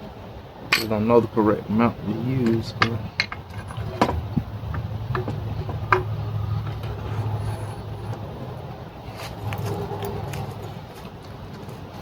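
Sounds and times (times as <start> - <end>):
bicycle parts clicking and tapping: 2.4 - 7.0
low rumble: 3.0 - 10.6.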